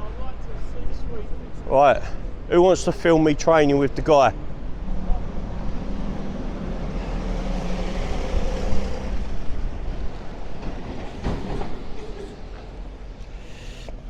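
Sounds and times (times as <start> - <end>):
passing vehicle rumble: 4.3 - 13.1.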